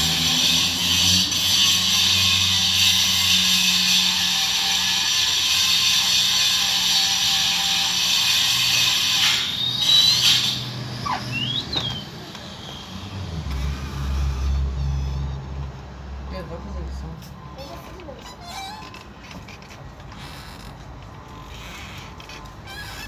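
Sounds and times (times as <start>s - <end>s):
power saw whining: 0.0s - 15.6s
short squeaks: 9.1s - 15.6s, 17.4s - 23.0s.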